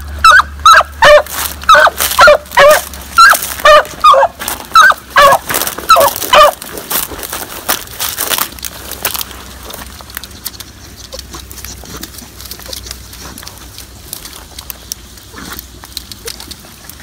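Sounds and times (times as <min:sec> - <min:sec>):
hound barking: 0:00.2 - 0:06.7.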